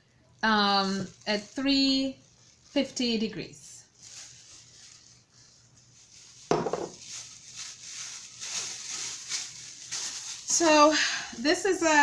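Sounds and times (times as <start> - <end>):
loud kitchenware knock: 6.5 - 6.9
kitchenware clattering: 6.5 - 7.0.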